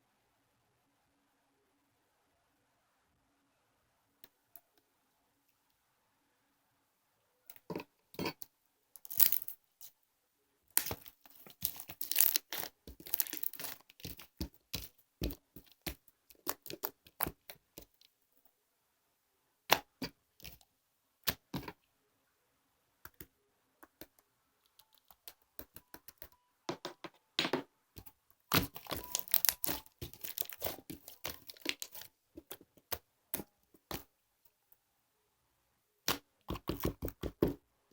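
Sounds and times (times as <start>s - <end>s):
crinkling handling noise: 9.0s - 9.9s, 10.7s - 18.1s, 28.0s - 34.1s.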